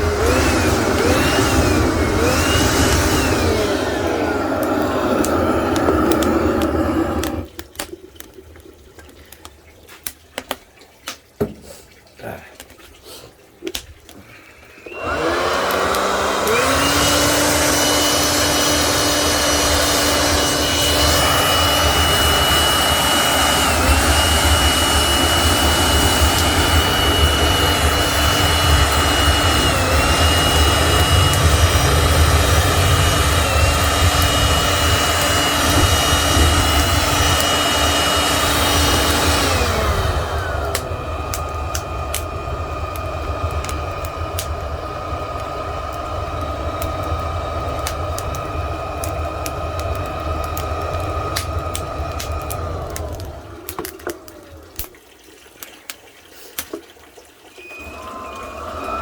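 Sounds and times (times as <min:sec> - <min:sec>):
electric blower motor whine: 0:00.0 - 0:07.5, 0:14.8 - 0:54.7, 0:57.6 - 0:59.0.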